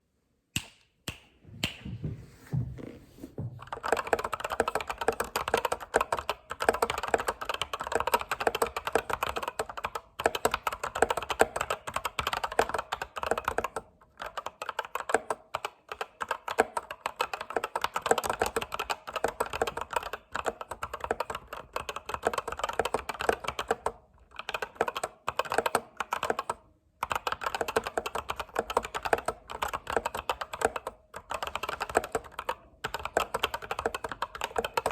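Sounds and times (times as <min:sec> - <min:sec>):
soft thumps: 0:01.5 - 0:03.6
fast typing on keyboard: 0:03.6 - 0:34.9.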